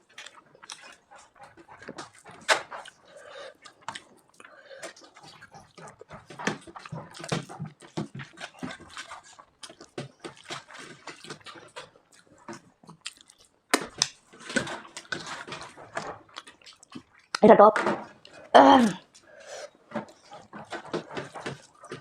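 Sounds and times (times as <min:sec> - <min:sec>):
wet chewing and slurping: 0:00.0 - 0:22.0.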